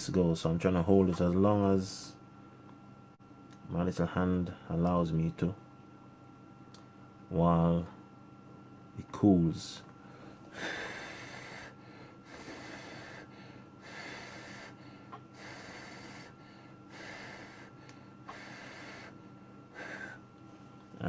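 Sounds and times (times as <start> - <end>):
faint electrical hum: 0.0 - 21.0
person breathing: 10.0 - 20.2.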